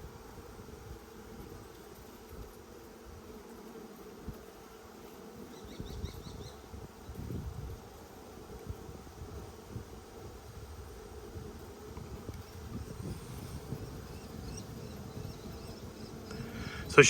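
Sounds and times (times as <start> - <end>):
honeybees buzzing: 0.1 - 17.0
high chirps: 12.5 - 17.0.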